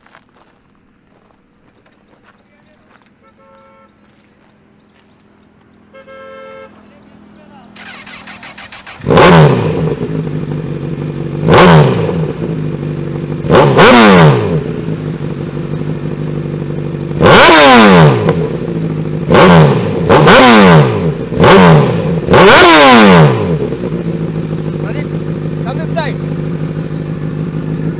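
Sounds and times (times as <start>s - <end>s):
superbike engine revving: 7.1s - 27.9s.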